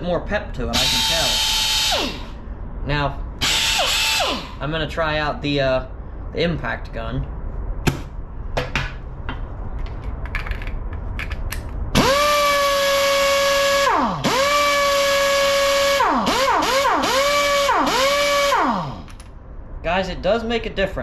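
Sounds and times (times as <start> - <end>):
impact wrench whine with air hiss: 0.8 - 2.4, 3.4 - 4.6, 12.0 - 19.1.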